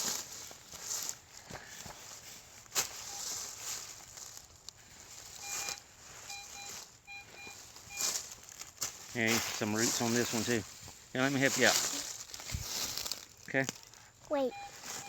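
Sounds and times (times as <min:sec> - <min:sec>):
metal detector beeps: 0:03.0 - 0:03.5, 0:05.3 - 0:08.4, 0:14.3 - 0:15.0.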